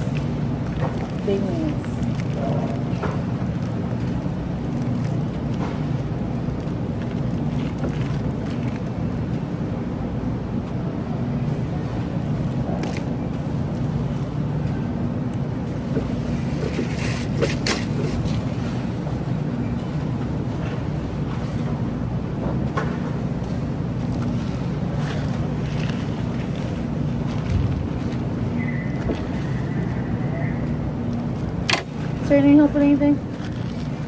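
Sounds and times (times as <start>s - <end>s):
low machine hum: 0.0s - 34.0s.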